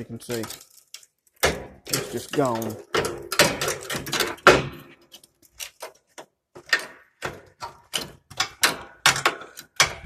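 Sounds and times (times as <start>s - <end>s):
sheet metal rattling and clanking: 0.0s - 10.0s
sharp metal knocks: 1.4s - 4.9s.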